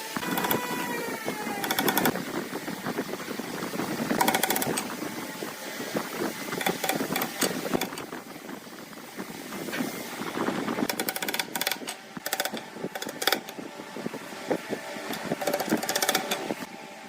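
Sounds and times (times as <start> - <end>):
power tool clattering: 1.6 - 2.2, 4.1 - 4.9, 6.6 - 8.1, 10.8 - 13.6, 15.1 - 16.6.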